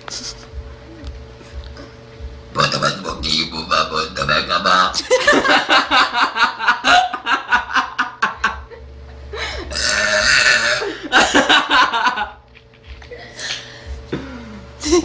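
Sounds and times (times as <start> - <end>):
girl burping loudly: 9.7 - 11.0.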